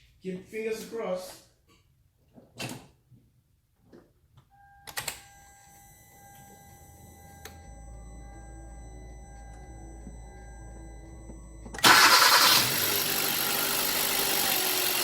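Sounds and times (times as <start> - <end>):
low engine hum: 6.6 - 13.6
high-pitched electrical whine: 6.8 - 15.0.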